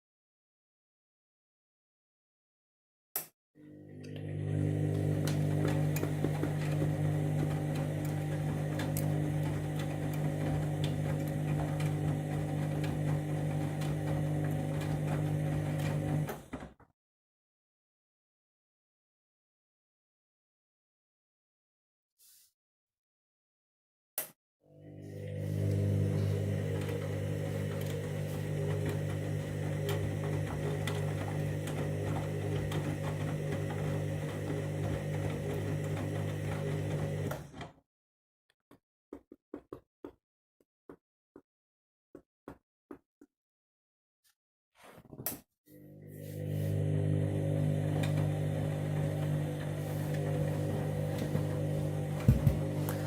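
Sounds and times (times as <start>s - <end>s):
washing machine motor hum: 3.6s - 16.7s, 24.7s - 37.8s, 45.7s - 53.0s.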